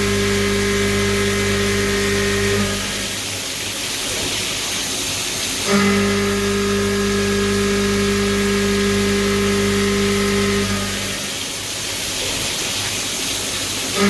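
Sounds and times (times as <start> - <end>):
milling spindle whine: 0.0 - 3.8, 4.6 - 12.0.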